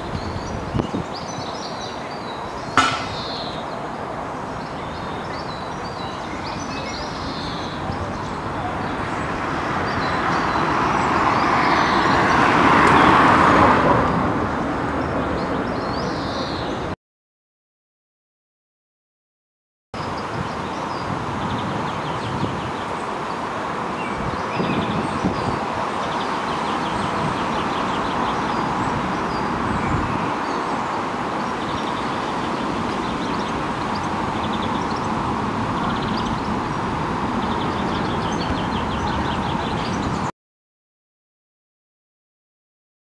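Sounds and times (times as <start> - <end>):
small birds chirping: 0.0 - 3.8, 4.4 - 13.1, 20.0 - 40.3
background traffic hum: 0.0 - 16.9, 20.2 - 40.3.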